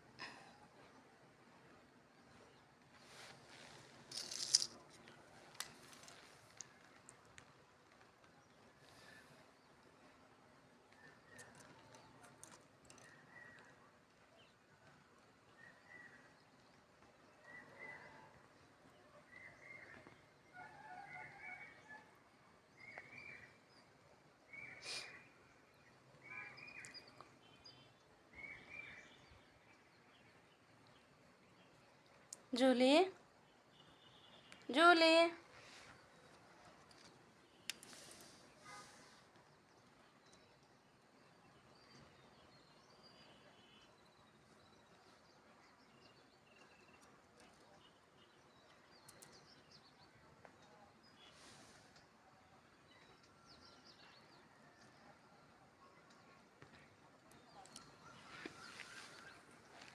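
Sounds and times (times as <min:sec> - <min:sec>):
soft hiss: 0:37.4 - 0:39.4
distant bird chirps: 0:52.8 - 0:59.9.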